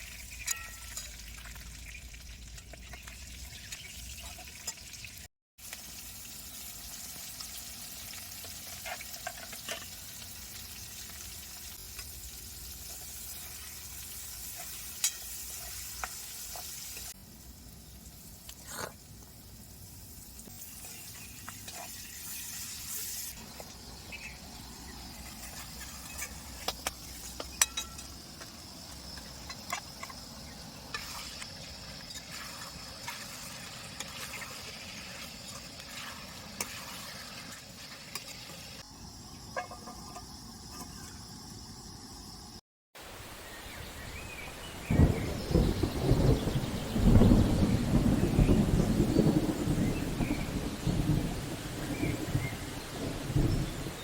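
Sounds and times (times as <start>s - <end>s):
food sizzling in a pan: 0.0s - 41.4s.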